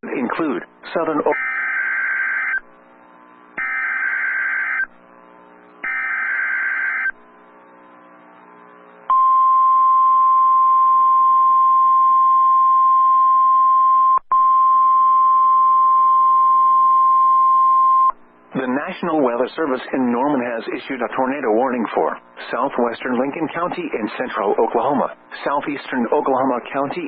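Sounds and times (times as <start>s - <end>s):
steady warning alarm tone: 1.2s - 2.6s, 3.6s - 7.2s.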